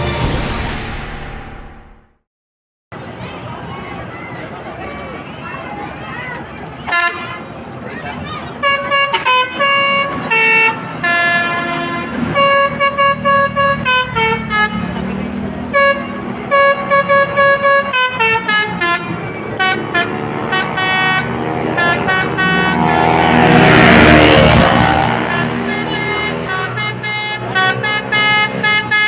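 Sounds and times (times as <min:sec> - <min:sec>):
bus horn playing a tune: 0:06.8 - 0:07.6, 0:08.6 - 0:29.0
loud rushing noise: 0:18.6 - 0:26.5.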